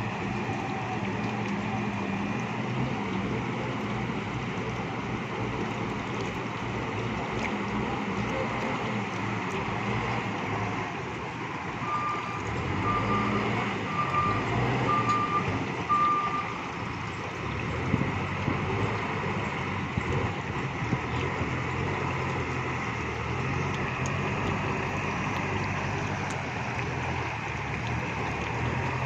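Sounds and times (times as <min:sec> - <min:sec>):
diesel engine running: 0:00.0 - 0:29.0
reversing alarm beeps: 0:11.8 - 0:16.5.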